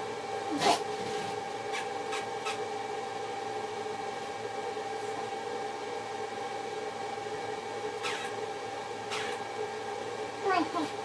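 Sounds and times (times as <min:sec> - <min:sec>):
machine hum and hiss: 0:00.0 - 0:11.0.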